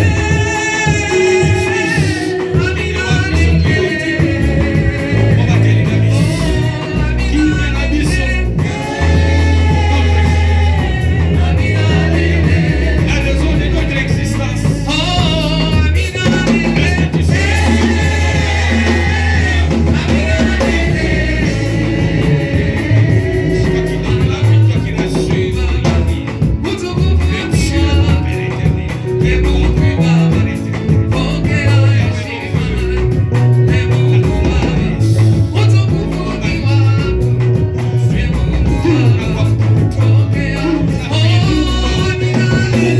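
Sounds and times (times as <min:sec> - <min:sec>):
voices singing a hymn: 0:00.0 - 0:42.9
worship band playing: 0:00.0 - 0:42.9.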